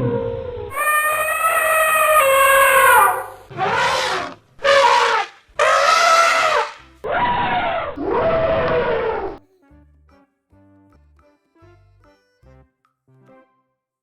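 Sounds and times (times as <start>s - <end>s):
cat yowling: 0.7s - 9.4s.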